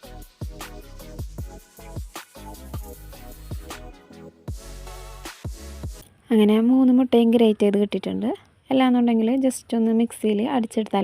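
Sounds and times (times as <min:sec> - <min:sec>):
electronic music with bass thumps: 0:00.0 - 0:06.0.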